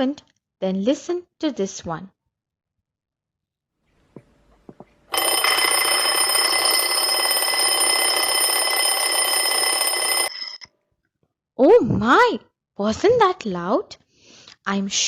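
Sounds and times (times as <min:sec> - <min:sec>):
alarm clock bell ringing: 0:05.1 - 0:10.6.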